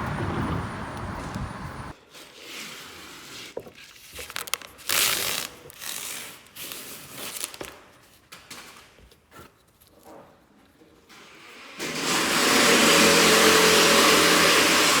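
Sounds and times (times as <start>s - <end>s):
crinkling and rustling: 3.6s - 10.9s.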